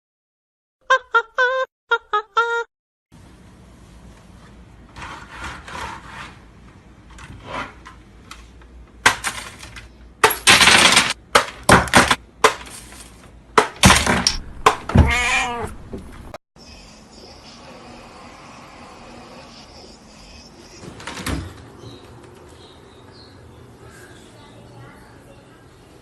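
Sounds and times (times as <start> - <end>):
loud crashes and clatter: 10.2 - 11.2
cat meowing: 14.9 - 15.8.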